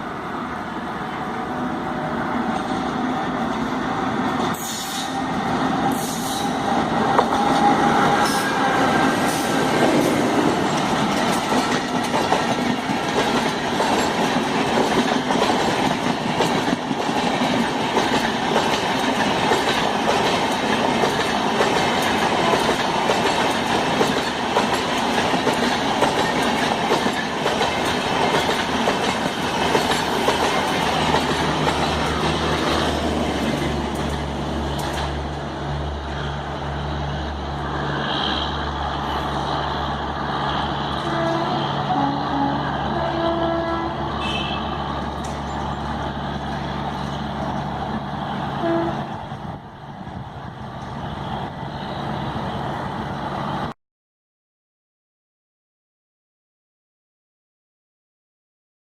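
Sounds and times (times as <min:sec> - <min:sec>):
train wheels clattering: 0:09.2 - 0:35.2.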